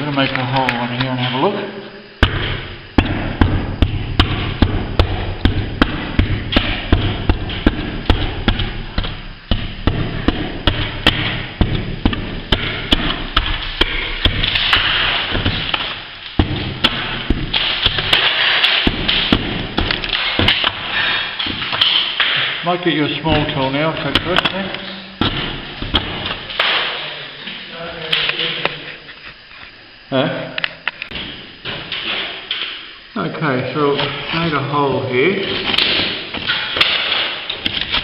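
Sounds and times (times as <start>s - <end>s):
sharp knocks on plaster ceiling: 2.2s - 22.6s, 25.2s - 27.0s
gritty crumbling plaster: 11.6s - 22.4s.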